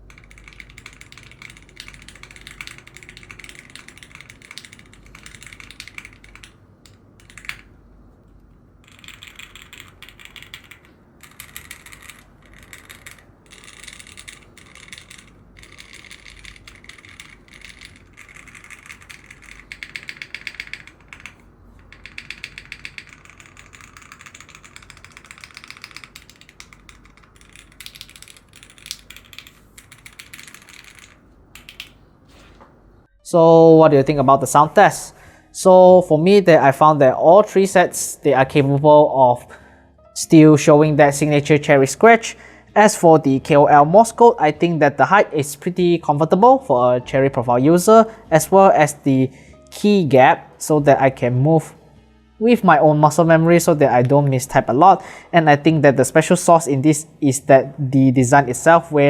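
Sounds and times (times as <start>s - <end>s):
mechanical keyboard typing: 0.0s - 7.7s, 8.8s - 32.0s.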